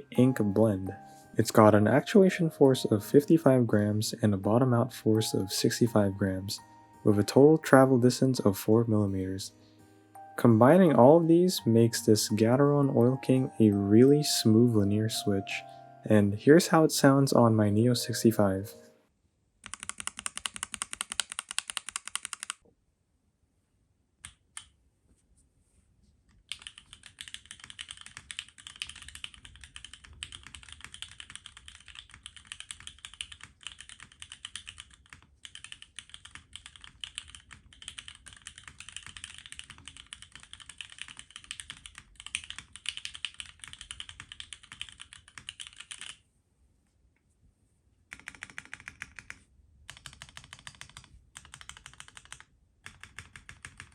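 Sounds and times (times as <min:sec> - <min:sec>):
mechanical keyboard typing: 0:19.6 - 0:22.6, 0:26.4 - 0:46.2, 0:48.1 - 0:53.9.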